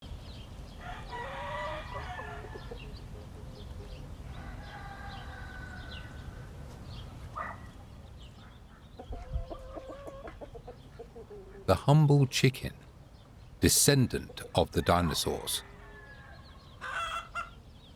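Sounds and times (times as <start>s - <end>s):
chickens clucking and calling: 0.9s - 6.8s, 8.3s - 12.2s, 13.8s - 17.7s.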